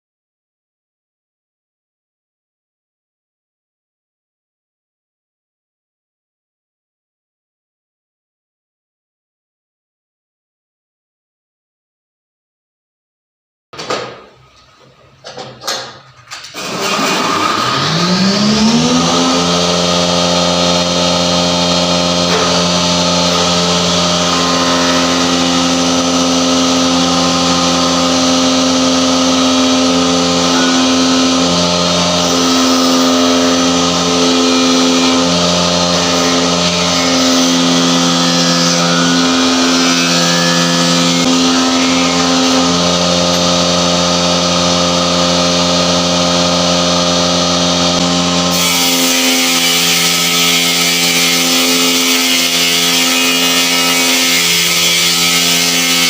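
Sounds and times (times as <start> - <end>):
electric motor humming: 16.7 - 38.2.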